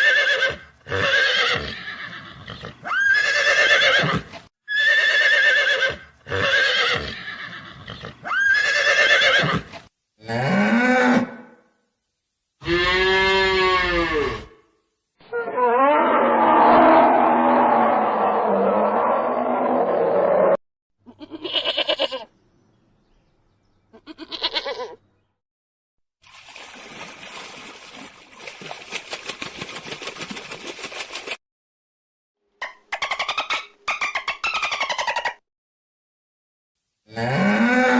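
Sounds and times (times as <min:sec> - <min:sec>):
horse whinnying: 0:00.0 - 0:11.4, 0:12.6 - 0:14.6
cow mooing: 0:12.6 - 0:14.5
goat bleating: 0:21.1 - 0:22.3, 0:23.9 - 0:25.0
water splashing and trickling: 0:26.2 - 0:31.4.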